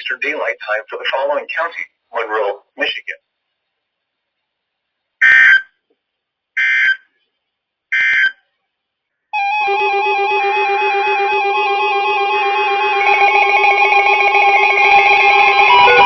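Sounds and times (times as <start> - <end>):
steady music: 9.4 - 16.0.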